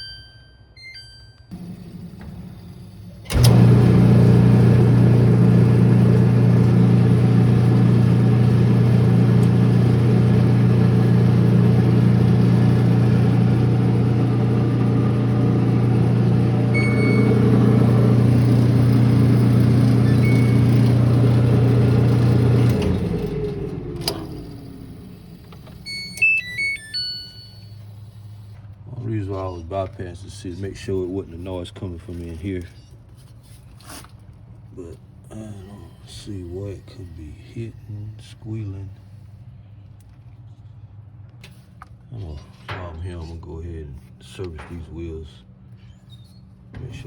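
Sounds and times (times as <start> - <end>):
dryer motor and fan humming: 0.9 - 33.2
short electronic beeps: 16.8 - 17.4.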